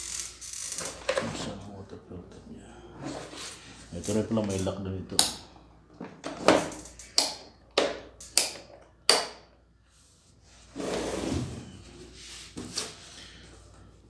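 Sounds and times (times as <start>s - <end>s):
plastic parts clicking and knocking: 4.4s - 9.4s.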